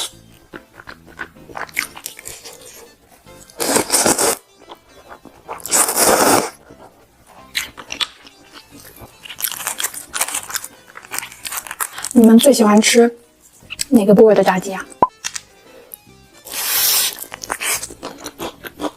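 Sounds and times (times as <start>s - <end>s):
crunchy chewing: 0.0s - 12.4s, 15.2s - 18.9s
loud bites or slurps: 5.7s - 6.6s.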